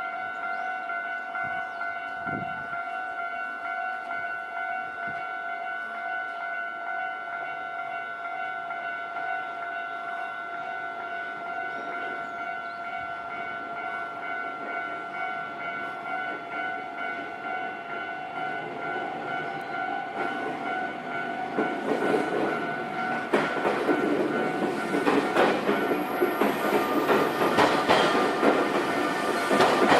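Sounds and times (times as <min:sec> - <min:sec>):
level-crossing alarm ringing: 0:00.0 - 0:29.9
train wheels clattering: 0:14.2 - 0:29.9.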